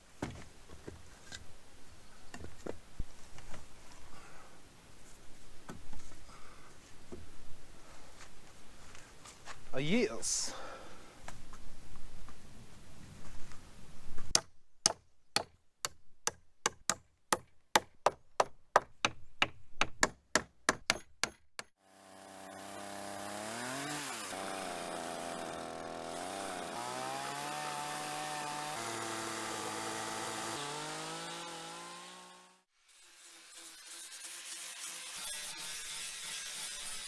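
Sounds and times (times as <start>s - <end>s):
chainsaw engine running: 21.8s - 32.7s.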